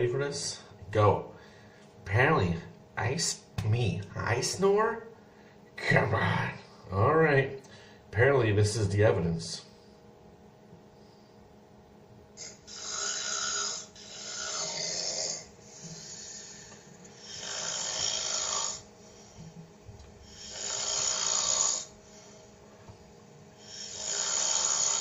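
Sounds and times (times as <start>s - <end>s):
man snoring loudly: 12.4s - 18.9s, 20.2s - 22.0s, 23.6s - 25.0s.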